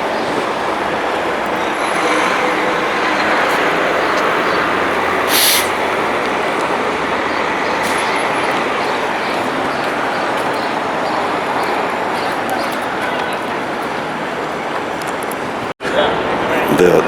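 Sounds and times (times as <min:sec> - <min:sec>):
city street traffic: 0:00.0 - 0:17.0
short sharp hiss: 0:05.3 - 0:05.9.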